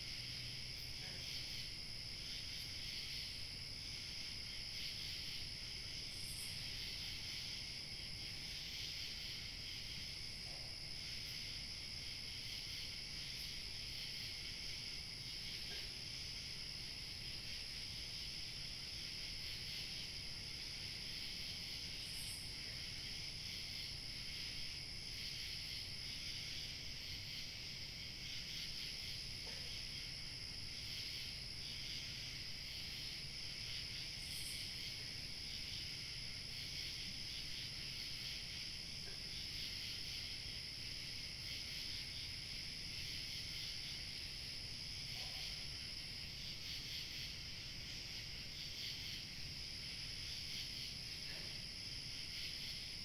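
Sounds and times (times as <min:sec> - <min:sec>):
crickets chirping: 0:00.0 - 0:53.0
high insect trill: 0:11.0 - 0:53.0.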